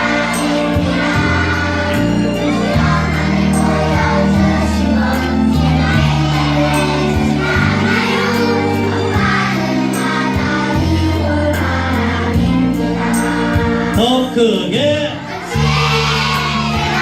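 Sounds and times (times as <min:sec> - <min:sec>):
children singing: 0:00.0 - 0:17.0
recorded song with steady beat: 0:00.0 - 0:17.0.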